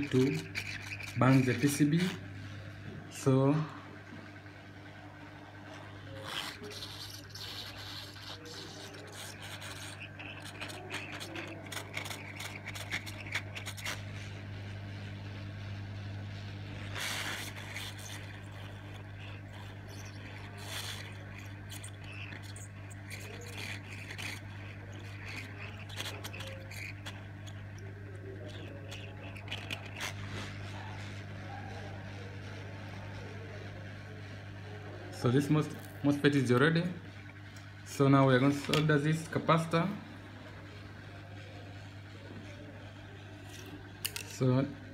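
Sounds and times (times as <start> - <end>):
solder paste crackling: 5.3 - 33.4.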